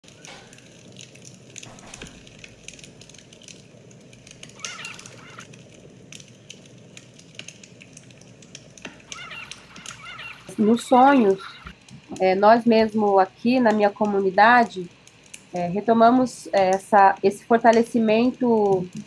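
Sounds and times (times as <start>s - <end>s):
scattered clicks and crackles: 0.0s - 12.3s, 13.7s - 15.6s
bird chirping: 4.6s - 5.5s, 9.1s - 11.7s.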